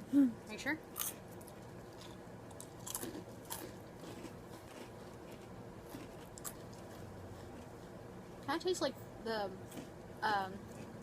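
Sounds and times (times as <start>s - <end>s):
chewing crunchy cereal: 1.0s - 8.0s, 10.6s - 11.0s.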